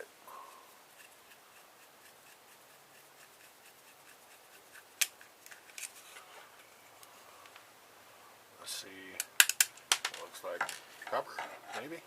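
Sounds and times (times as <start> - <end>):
hand tools clicking and scraping: 0.5 - 6.7, 9.2 - 12.0.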